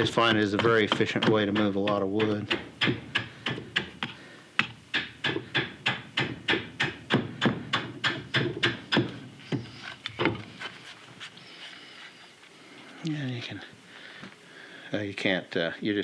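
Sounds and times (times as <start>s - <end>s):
axe chopping wood: 0.0s - 10.4s.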